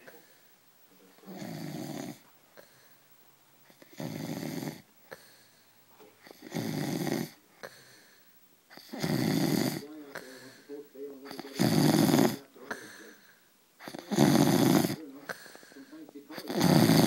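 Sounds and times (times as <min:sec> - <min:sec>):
snoring: 0:01.2 - 0:02.8, 0:03.7 - 0:05.4, 0:06.2 - 0:08.0, 0:08.7 - 0:10.7, 0:11.3 - 0:13.2, 0:13.8 - 0:17.0.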